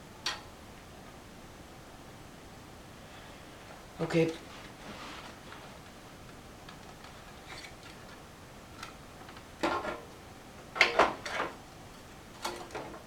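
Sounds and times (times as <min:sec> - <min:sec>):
computer fan being handled clicks: 0:00.2 - 0:00.5.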